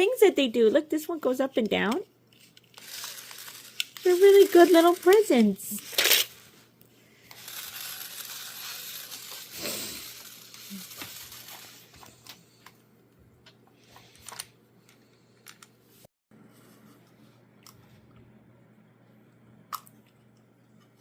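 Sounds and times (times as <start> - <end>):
toy parts clicking: 1.8 - 6.3, 7.3 - 11.8
packaging crinkling: 2.4 - 6.5.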